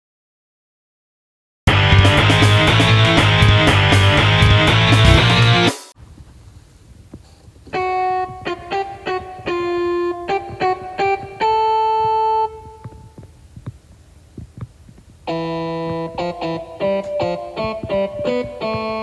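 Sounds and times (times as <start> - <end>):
distorted electric guitar riff: 1.7 - 5.9, 15.3 - 19.0.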